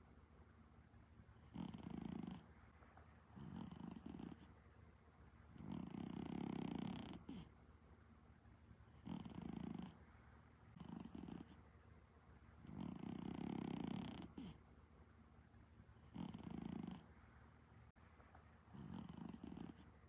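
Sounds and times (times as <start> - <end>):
cat snoring: 1.4 - 2.5, 3.4 - 4.5, 5.5 - 7.5, 9.0 - 10.0, 10.7 - 11.6, 12.6 - 14.6, 16.0 - 17.1, 18.7 - 19.9.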